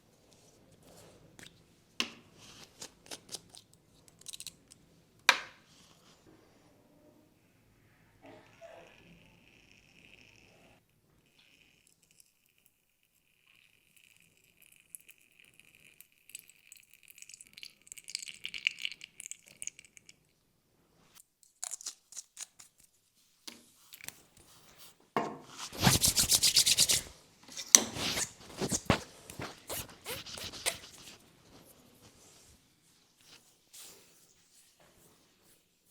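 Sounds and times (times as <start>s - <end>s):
hands rubbing hair on scalp: 24.4s - 32.5s.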